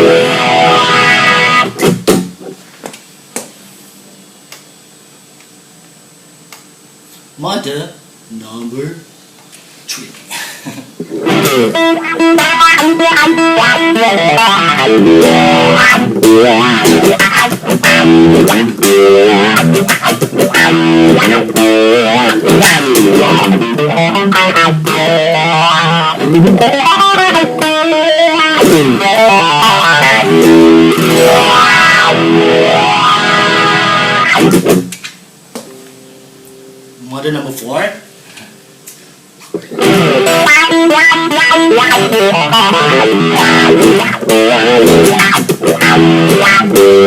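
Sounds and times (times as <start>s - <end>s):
overdriven electric guitar with wah: 0.0s - 2.6s, 11.0s - 35.1s, 39.5s - 47.0s.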